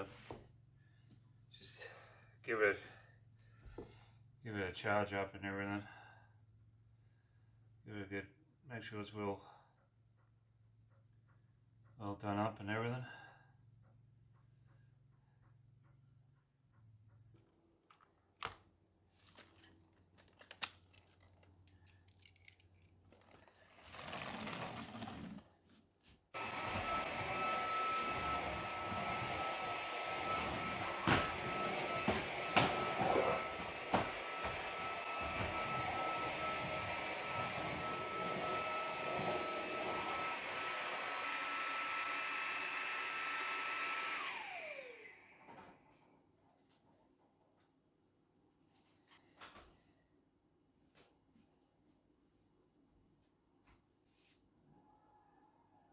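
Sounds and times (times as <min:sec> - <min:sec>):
plastic clicks: 0:19.5 - 0:23.4
stick vacuum running: 0:23.9 - 0:25.4, 0:26.4 - 0:45.2.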